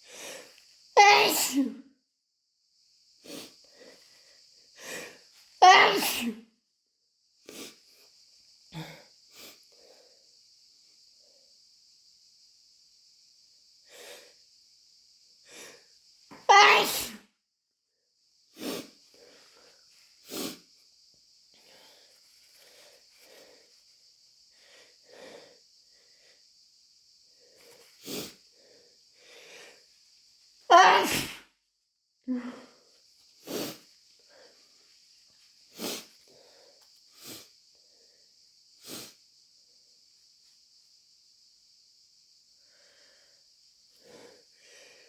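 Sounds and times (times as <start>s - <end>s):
person sneezing: 1.0s - 1.8s, 5.6s - 6.4s, 16.4s - 17.2s, 30.7s - 31.4s
noisy nasal sniffs: 3.2s - 3.6s, 7.5s - 8.0s, 18.5s - 20.8s, 27.6s - 29.8s, 33.4s - 34.4s, 35.7s - 37.6s, 38.8s - 39.2s
faint breathing: 21.5s - 26.6s, 42.6s - 45.0s
soft breathing: 21.5s - 30.2s
sharp congested nose breaths: 33.4s - 34.6s, 35.7s - 37.6s.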